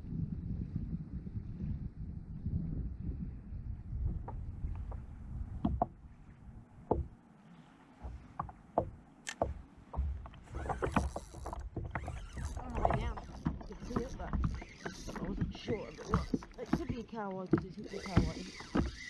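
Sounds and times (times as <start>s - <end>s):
water: 0.0s - 19.0s
wind: 0.0s - 19.0s
knocks against kayak hull: 4.0s - 6.0s, 6.8s - 7.2s, 8.0s - 19.0s.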